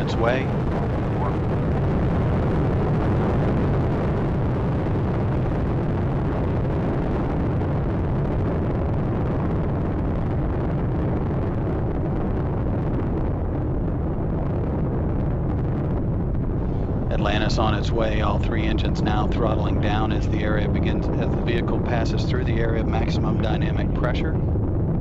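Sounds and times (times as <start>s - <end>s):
rocket engines crackling rumble: 0.0s - 25.0s.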